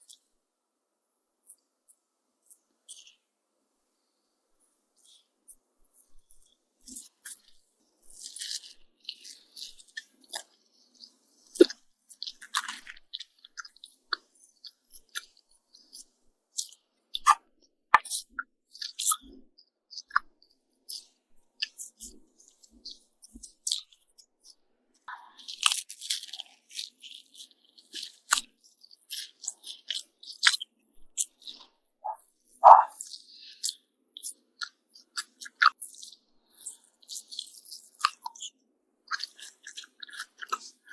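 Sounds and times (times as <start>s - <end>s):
crisp chewing crunches: 5.9s - 17.4s, 18.0s - 19.4s, 20.9s - 38.5s, 39.1s - 40.9s
wet mouth clicks: 8.2s - 10.6s, 11.5s - 17.4s, 18.0s - 19.4s, 29.1s - 38.5s, 39.1s - 40.9s.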